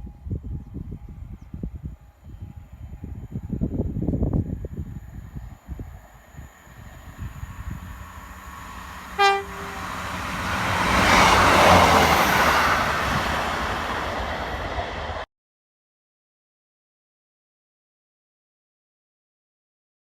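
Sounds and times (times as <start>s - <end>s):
train passing: 0.2s - 15.3s
train horn blast: 8.7s - 11.8s.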